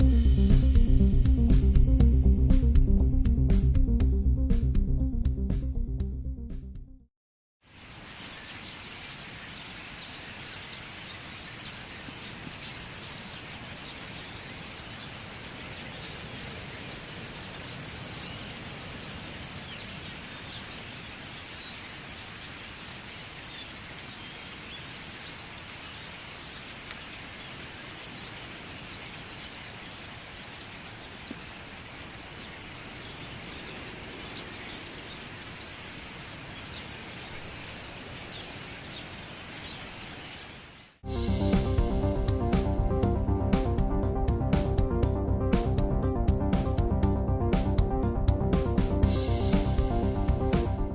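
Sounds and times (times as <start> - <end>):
forest birds chirping: 7.6 - 50.9
background hiss: 7.7 - 42.9.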